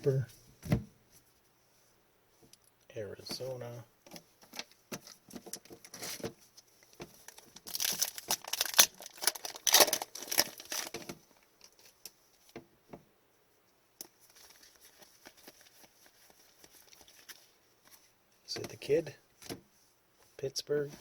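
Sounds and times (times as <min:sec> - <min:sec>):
plastic wrapper crinkling and tearing: 0:06.8 - 0:12.0, 0:14.3 - 0:18.0.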